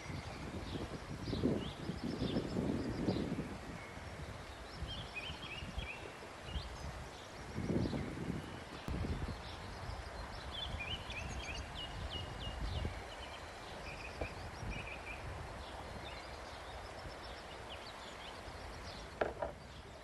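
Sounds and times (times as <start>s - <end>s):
small birds chirping: 0.0s - 20.0s
soft knocks: 19.2s - 19.6s.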